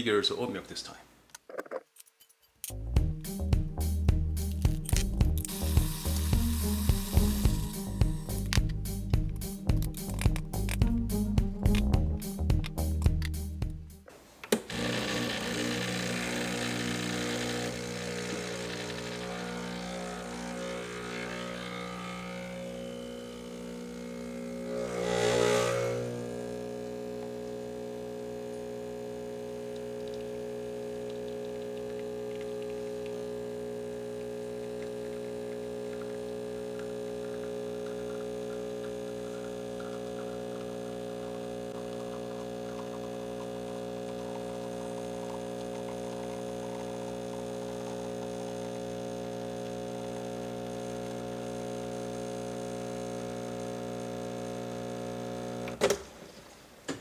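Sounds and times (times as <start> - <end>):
espresso machine pump humming: 5.4 - 8.6, 14.7 - 55.8.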